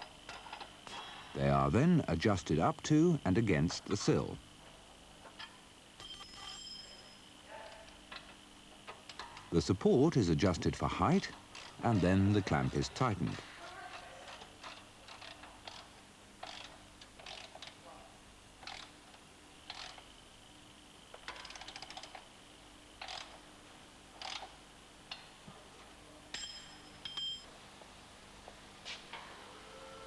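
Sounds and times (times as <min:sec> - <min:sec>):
faint metal tool clinks: 0:06.0 - 0:07.2, 0:26.3 - 0:27.5
ringing metallic clink: 0:06.0 - 0:07.2, 0:26.3 - 0:27.5
ratchet clicks: 0:14.3 - 0:17.8, 0:18.6 - 0:18.9, 0:19.7 - 0:20.1, 0:21.1 - 0:22.3, 0:23.0 - 0:23.4, 0:24.2 - 0:25.3.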